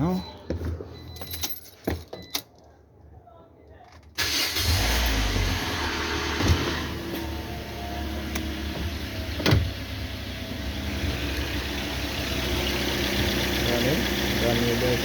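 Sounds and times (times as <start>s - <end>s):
car engine idling: 4.2s - 15.0s.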